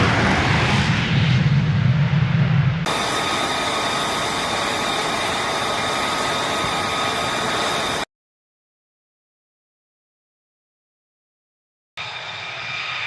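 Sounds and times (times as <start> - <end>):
jet engine idling: 2.8 - 8.1, 12.0 - 13.0.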